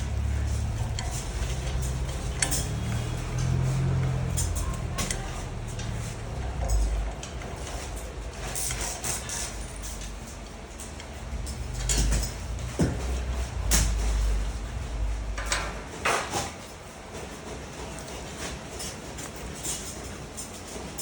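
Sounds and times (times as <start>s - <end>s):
low handling rumble: 0.0s - 16.2s
metal parts knocking and scraping: 0.0s - 16.7s.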